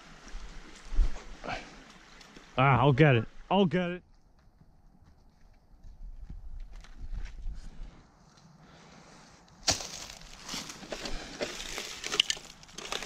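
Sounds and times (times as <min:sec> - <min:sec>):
dry leaves crackling and rustling: 0:09.6 - 0:13.0.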